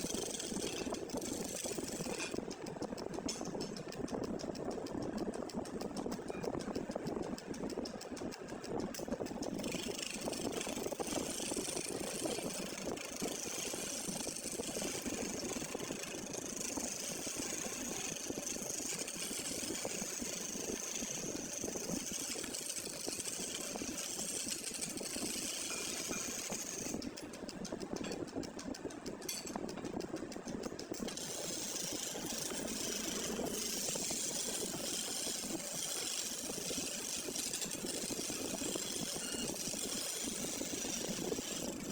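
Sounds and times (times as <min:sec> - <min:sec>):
woodworking machine cutting wood: 0:09.8 - 0:26.9, 0:31.2 - 0:41.8.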